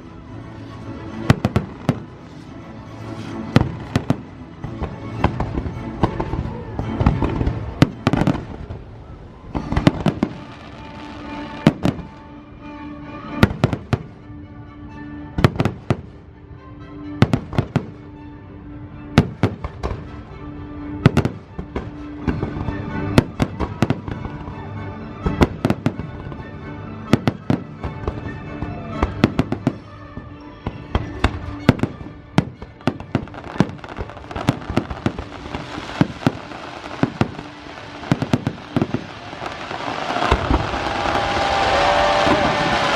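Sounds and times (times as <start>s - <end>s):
orchestral music over loudspeakers: 0.0s - 42.9s
fireworks bursting with sharp bangs: 0.6s - 12.3s, 21.0s - 24.5s, 27.1s - 30.0s, 30.8s - 42.9s.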